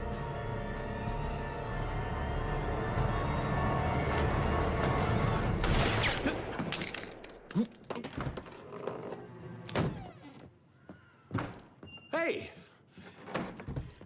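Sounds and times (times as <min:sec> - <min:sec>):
tense film score music: 0:00.0 - 0:06.7
sharp gunshots: 0:05.6 - 0:06.6.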